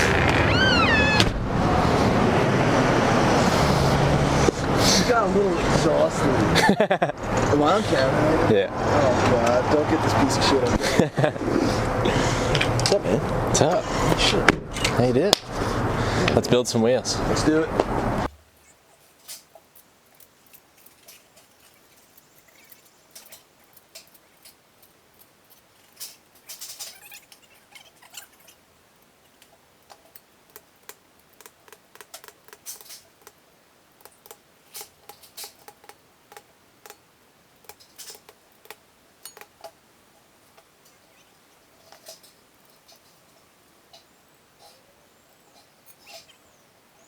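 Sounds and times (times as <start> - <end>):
small parts clicking and tapping: 19.2 - 28.6, 29.2 - 39.8.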